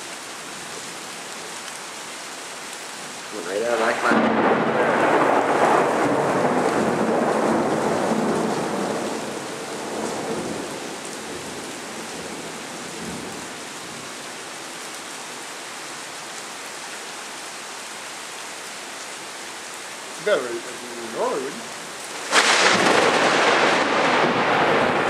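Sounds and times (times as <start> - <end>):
steady rain: 0.0 - 25.0
rumble of thunder: 3.8 - 10.8, 22.3 - 25.0.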